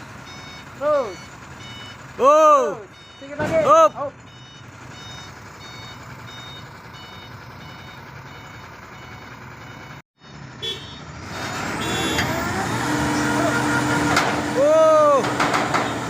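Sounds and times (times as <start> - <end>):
diesel truck engine labouring: 0.0 - 16.0
reverse alarm beeps: 0.2 - 2.0, 2.9 - 11.0.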